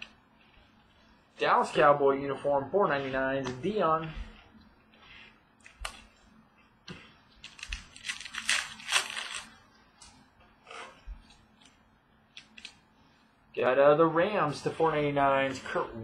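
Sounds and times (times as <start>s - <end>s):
rustling and scraping: 0.0s - 13.4s, 14.4s - 16.0s.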